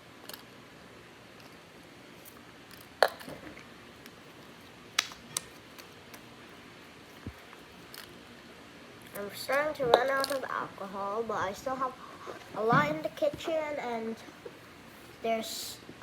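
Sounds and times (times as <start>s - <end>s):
sharp clicks and snaps: 5.0s - 6.2s.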